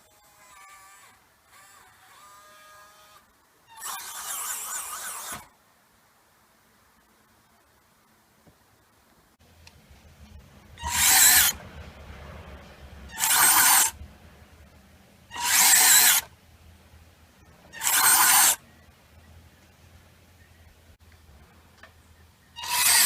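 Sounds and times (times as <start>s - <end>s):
small electric gear motors running: 0.0s - 5.5s, 10.8s - 11.7s, 12.4s - 14.0s, 15.3s - 16.4s, 17.7s - 18.6s, 22.6s - 23.0s
faint low hum: 0.0s - 23.0s.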